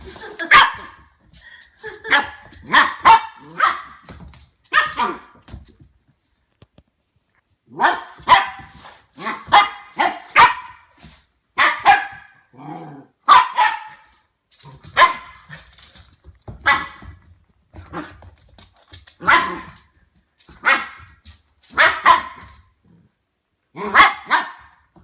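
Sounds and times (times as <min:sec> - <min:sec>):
puppy barking: 0:00.4 - 0:01.0, 0:02.0 - 0:04.0, 0:04.7 - 0:05.4, 0:07.7 - 0:10.8, 0:11.6 - 0:12.4, 0:13.2 - 0:14.2, 0:15.0 - 0:15.4, 0:20.6 - 0:21.1, 0:21.7 - 0:22.6, 0:23.8 - 0:24.8.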